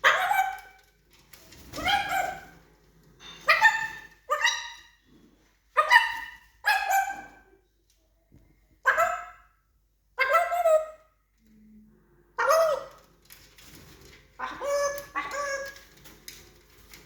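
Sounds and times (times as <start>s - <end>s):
parrot imitating dog bark: 0.0s - 0.8s, 1.8s - 2.6s, 3.4s - 4.8s, 5.8s - 7.4s, 8.8s - 9.5s, 10.2s - 11.1s, 12.4s - 13.0s, 14.4s - 15.8s.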